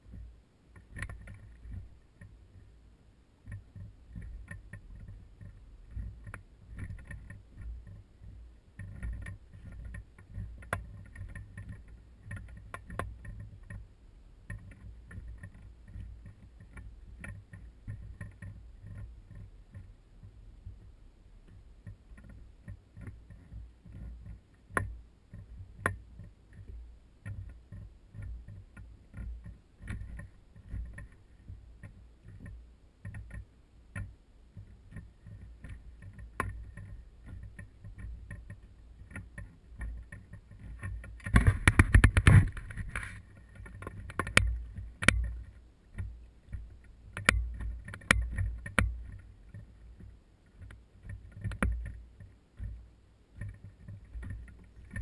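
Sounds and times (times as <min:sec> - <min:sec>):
low rumble of water: 0:00.0 - 0:55.0
wind: 0:00.0 - 0:55.0
gear knocking against boat hull: 0:21.5 - 0:55.0.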